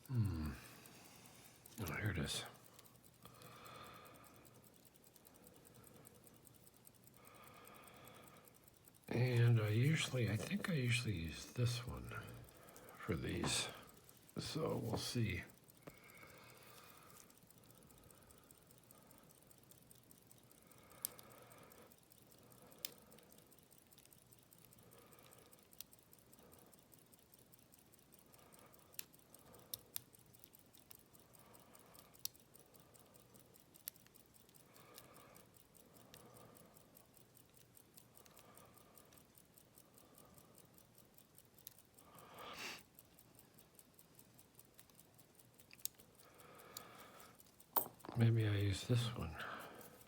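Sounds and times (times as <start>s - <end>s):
lock pick clicking and scraping: 47.4s - 48.2s.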